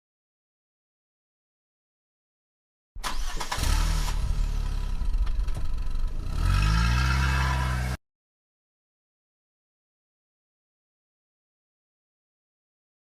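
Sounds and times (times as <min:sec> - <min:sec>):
car engine starting and revving: 0:03.0 - 0:08.0.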